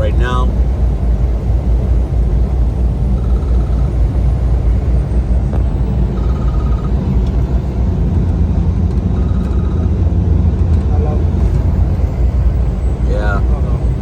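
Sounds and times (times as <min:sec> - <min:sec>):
truck diesel engine rumble: 0:00.0 - 0:14.0
faint high ticking buzz: 0:02.5 - 0:05.2.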